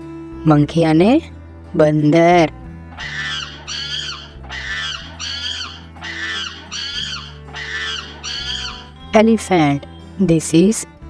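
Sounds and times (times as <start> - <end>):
soft background music: 0.0 - 11.0
monkey screeching chatter: 3.0 - 9.7.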